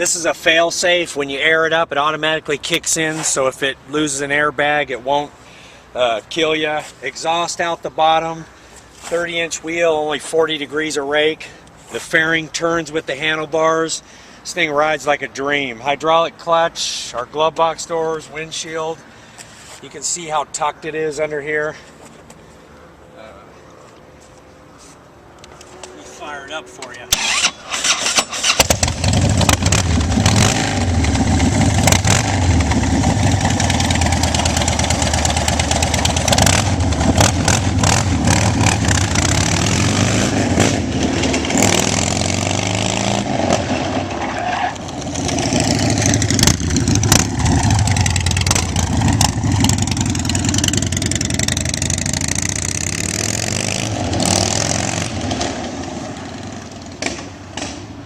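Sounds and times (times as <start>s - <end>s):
motorcycle engine starting and revving: 26.9s - 58.0s.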